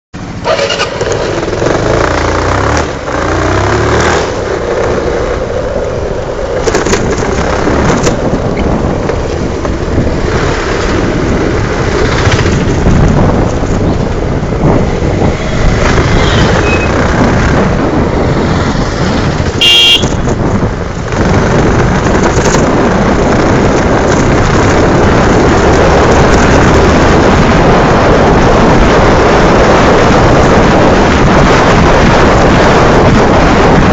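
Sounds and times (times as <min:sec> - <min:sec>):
motorcycle engine running: 0:00.2 - 0:33.9
wind rush on microphone: 0:00.2 - 0:33.9
high-pitched beep: 0:16.2 - 0:17.0.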